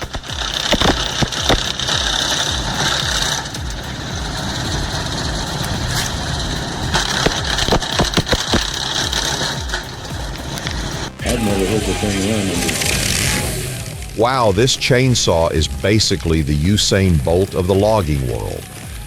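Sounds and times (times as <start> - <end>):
sharp clicks and knocks: 0.0 - 11.2
wood chipper engine running: 0.0 - 14.6.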